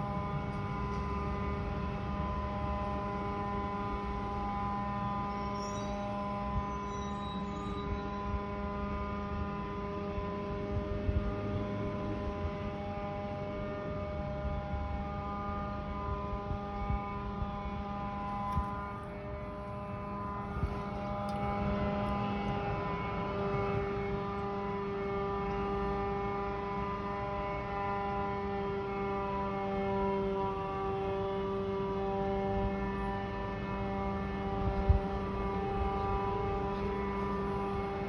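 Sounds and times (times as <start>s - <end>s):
droning mechanical hum: 0.0s - 38.0s.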